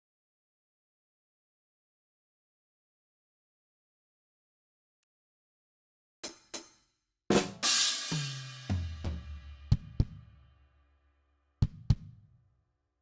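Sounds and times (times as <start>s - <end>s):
drum kit playing: 7.3s - 10.2s
cymbal crash: 7.6s - 9.5s.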